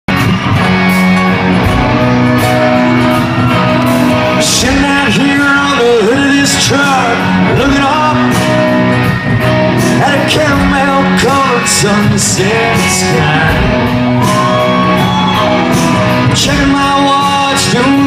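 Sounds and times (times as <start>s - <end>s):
country band playing ballad: 0.1s - 18.0s
sliding guitar lines: 0.1s - 18.0s
man singing: 4.2s - 8.9s, 9.8s - 14.9s, 16.1s - 18.0s.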